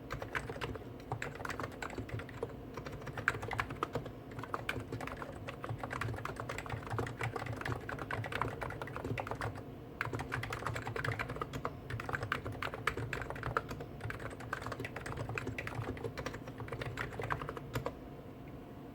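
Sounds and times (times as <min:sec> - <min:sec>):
keyboard typing clatter: 0:00.0 - 0:18.0.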